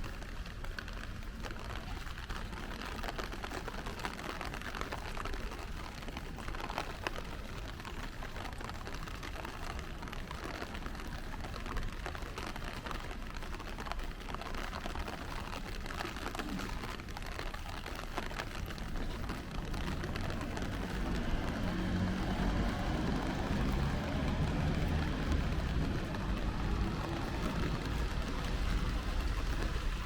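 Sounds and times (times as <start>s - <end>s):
rain pattering on streets: 0.0s - 30.0s.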